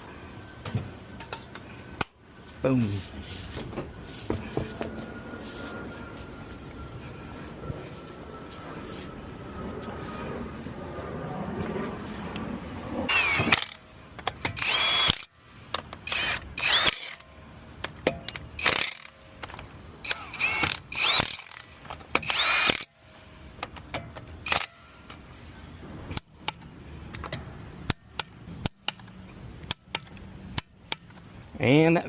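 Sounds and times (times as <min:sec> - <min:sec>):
impact wrench bursts: 0:13.1 - 0:13.8, 0:14.4 - 0:15.3, 0:16.0 - 0:17.2, 0:18.6 - 0:19.2, 0:20.0 - 0:23.0.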